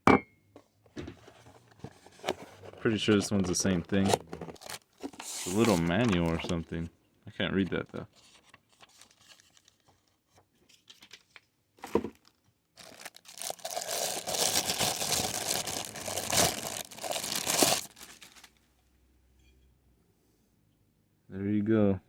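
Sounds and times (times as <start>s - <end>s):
packaging rustling: 1.2s - 6.8s, 7.6s - 18.6s
packaging crinkling and tearing: 2.7s - 6.8s, 8.2s - 10.2s, 10.8s - 18.6s.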